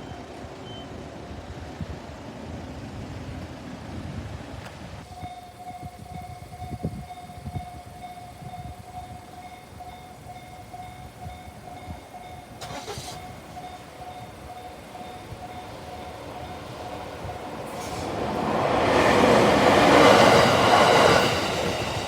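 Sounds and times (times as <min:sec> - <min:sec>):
low wind rumble: 0:01.2 - 0:22.0
level-crossing warning bell ringing: 0:05.0 - 0:22.0.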